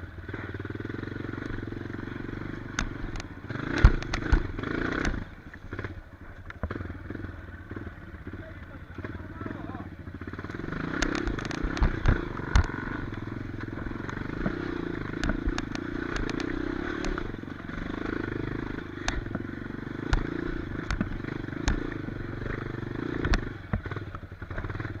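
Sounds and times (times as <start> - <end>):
motorcycle engine running: 0.0 - 25.0
sharp knocks and clatter: 2.5 - 5.2, 10.8 - 18.3, 19.0 - 24.8.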